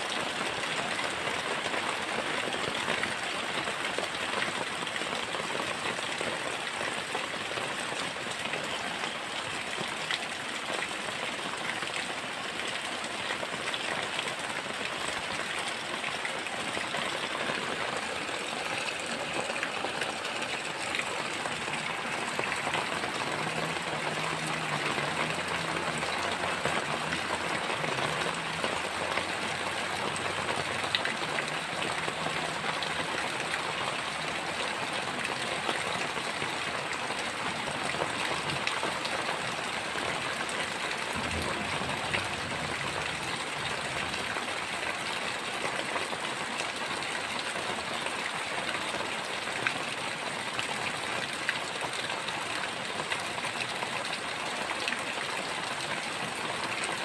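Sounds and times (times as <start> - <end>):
heavy rain hissing: 12.7 - 45.0.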